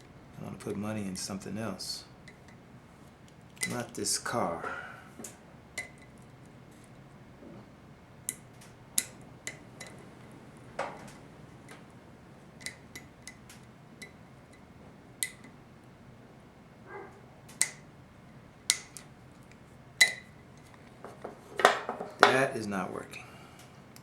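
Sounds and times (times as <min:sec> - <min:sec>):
metallic clicks and taps of tools: 0:12.6 - 0:14.6, 0:17.5 - 0:17.8, 0:18.7 - 0:22.4.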